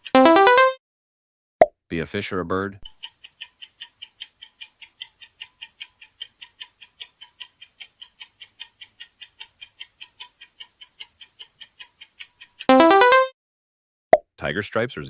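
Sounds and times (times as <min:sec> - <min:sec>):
countdown timer ticking: 0:00.0 - 0:00.8, 0:03.0 - 0:13.3.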